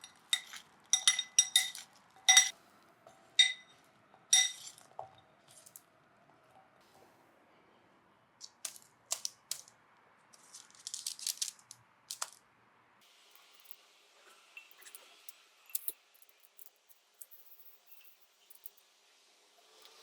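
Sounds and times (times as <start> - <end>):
crisp pieces clattering in a dish: 0.0 - 2.5, 4.3 - 5.8, 8.4 - 9.7, 10.4 - 12.4.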